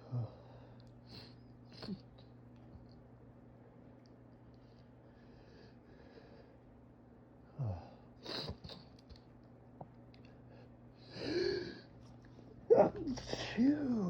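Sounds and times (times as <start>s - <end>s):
faint breathing: 4.6s - 6.7s.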